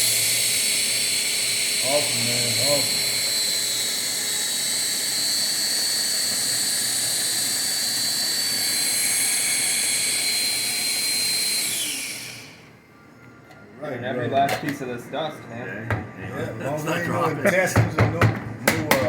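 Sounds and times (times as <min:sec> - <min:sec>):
coffee grinder whining: 0:00.0 - 0:12.8.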